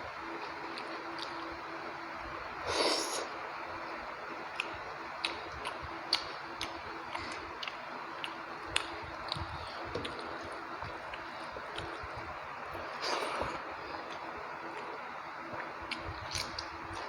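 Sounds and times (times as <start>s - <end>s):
mouth clicks and squishes eating: 0.5s - 1.6s, 4.5s - 17.0s.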